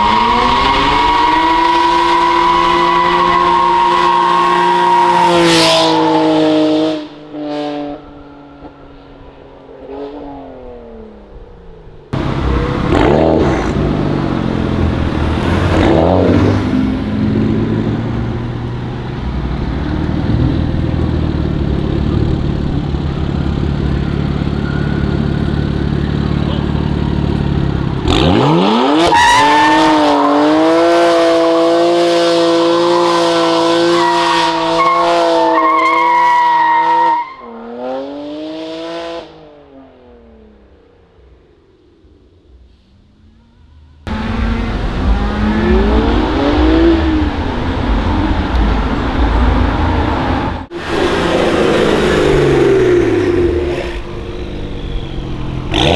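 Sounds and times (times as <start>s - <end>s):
car engine revving: 12.1s - 55.9s.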